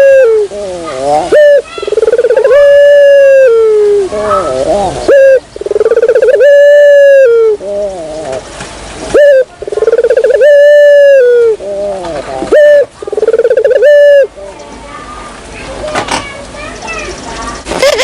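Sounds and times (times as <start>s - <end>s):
dove cooing loudly: 0.0s - 8.5s, 9.1s - 14.5s.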